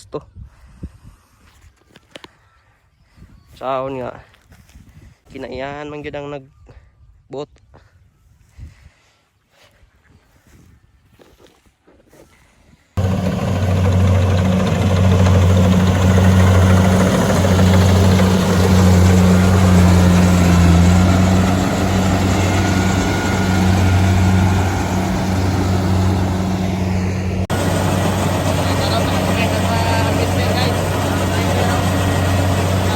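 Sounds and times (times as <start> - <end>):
harvester engine humming: 13.0 - 32.9.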